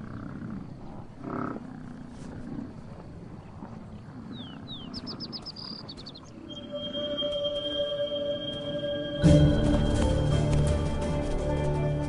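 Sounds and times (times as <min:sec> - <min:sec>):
small bird chirping: 0:03.4 - 0:09.2.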